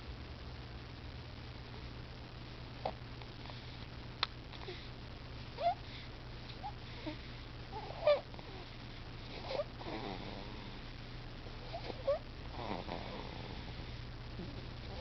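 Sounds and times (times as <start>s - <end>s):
baby snoring: 6.6s - 10.9s, 11.6s - 15.0s.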